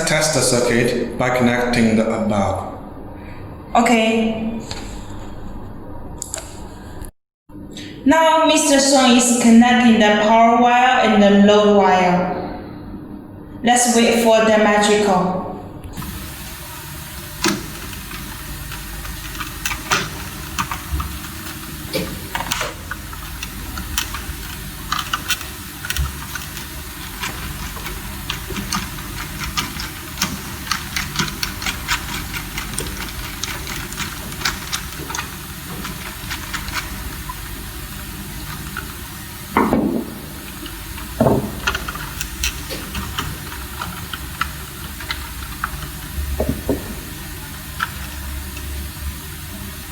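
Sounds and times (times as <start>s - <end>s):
steady hiss: 16.0s - 49.9s.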